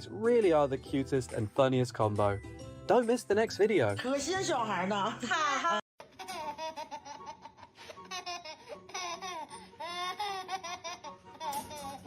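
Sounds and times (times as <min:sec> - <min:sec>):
baby laughing: 0:06.0 - 0:12.0.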